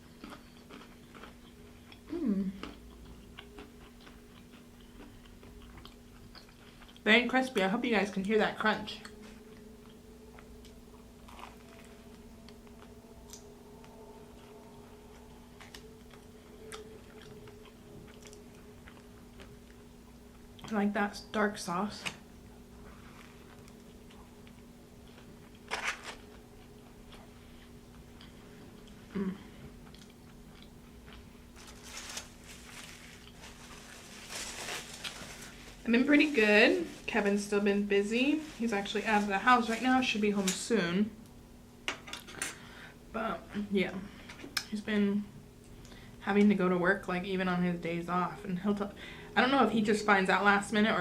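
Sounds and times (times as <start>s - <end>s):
chewing crunches: 0.0s - 7.1s, 14.4s - 20.7s, 29.8s - 31.8s
faint steady hum: 0.0s - 51.0s.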